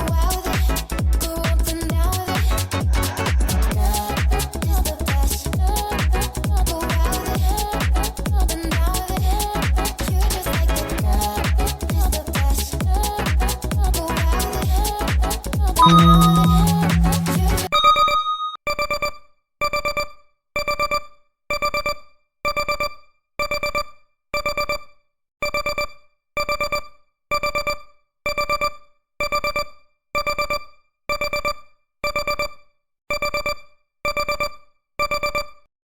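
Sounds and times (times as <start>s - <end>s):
digital timer alarm beeping: 15.8s - 18.6s, 23.5s - 35.7s.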